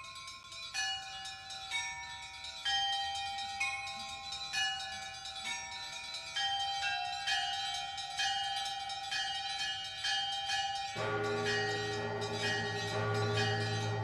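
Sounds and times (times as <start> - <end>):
church bells ringing: 3.6 - 14.0.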